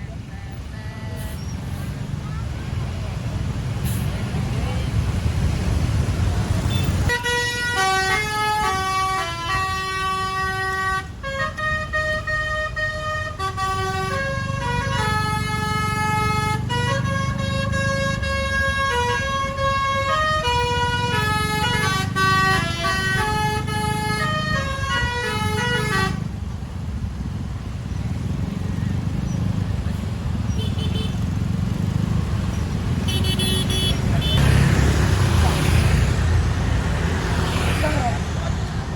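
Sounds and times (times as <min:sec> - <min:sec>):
engine and road rumble: 0:00.0 - 0:38.9
musical bus horn tune: 0:06.7 - 0:26.3, 0:33.1 - 0:34.4.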